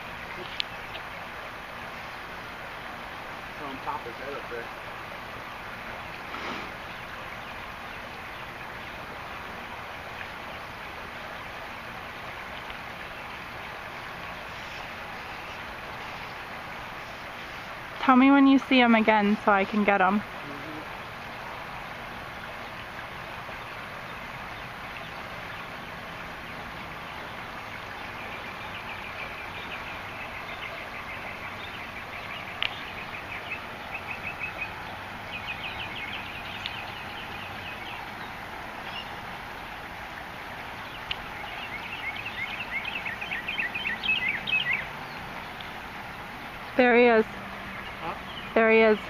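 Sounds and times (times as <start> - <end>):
outdoor background hiss: 0.0 - 49.0
bird trilling: 41.4 - 45.2.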